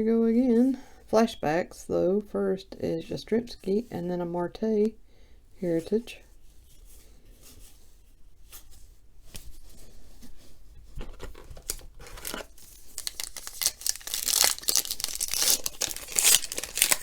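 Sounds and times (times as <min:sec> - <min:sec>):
wrapper tearing and crinkling: 0:11.1 - 0:17.0.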